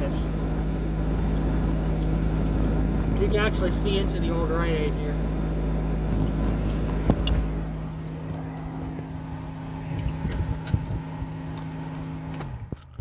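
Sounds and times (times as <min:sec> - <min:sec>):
car engine running: 0:00.0 - 0:13.0.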